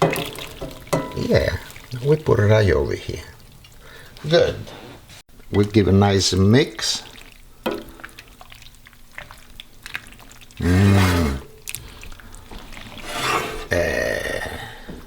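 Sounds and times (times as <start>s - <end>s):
pasta squishing in sauce: 7.0s - 14.1s
person humming: 10.6s - 11.5s, 13.4s - 14.9s
utensil scraping pan: 10.6s - 11.5s, 12.8s - 13.7s.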